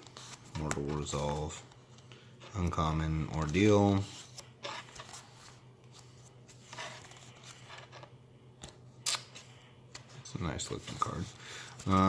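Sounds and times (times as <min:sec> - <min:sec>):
cards sliding and rustling: 0:03.3 - 0:08.1, 0:09.1 - 0:12.0.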